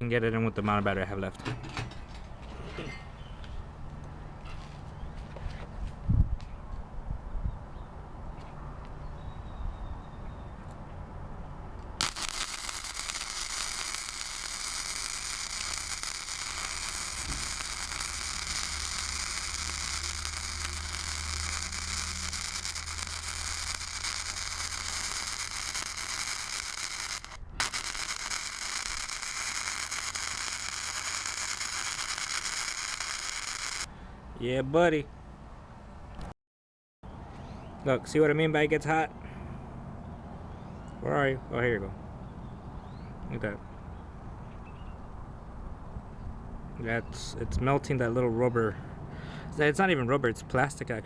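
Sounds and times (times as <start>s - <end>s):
welding arc crackling sizzle: 12.0s - 33.9s.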